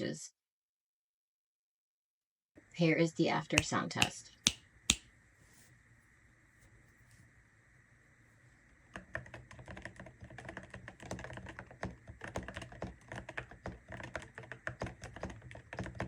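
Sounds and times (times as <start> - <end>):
fast typing on mechanical keyboard: 9.0 - 16.0.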